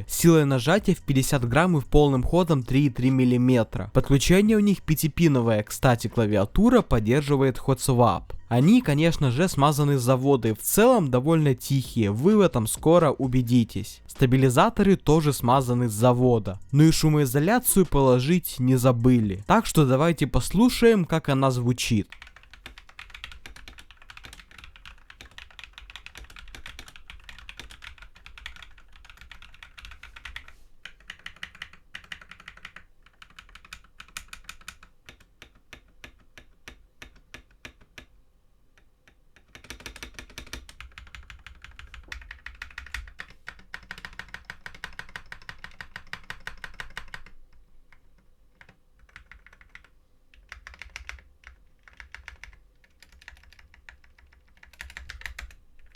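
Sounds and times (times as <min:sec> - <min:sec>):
typing on mechanical keyboard: 0:21.9 - 0:38.2, 0:39.3 - 0:55.9.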